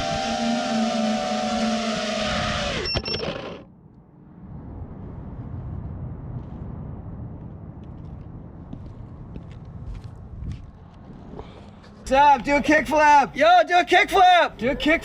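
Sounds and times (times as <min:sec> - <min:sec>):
drone motors whining: 0:00.0 - 0:03.7.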